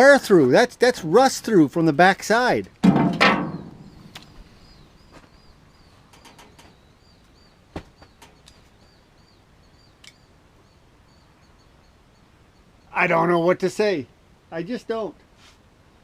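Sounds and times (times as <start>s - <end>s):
sharp knock: 2.8s - 4.2s
small bird chirping: 3.5s - 13.1s.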